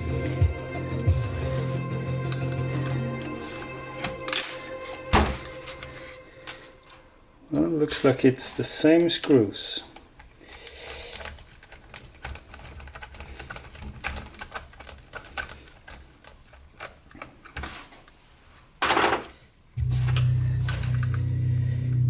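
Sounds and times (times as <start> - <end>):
small plastic parts clicking: 9.0 - 17.7
steady low hum: 19.7 - 22.0.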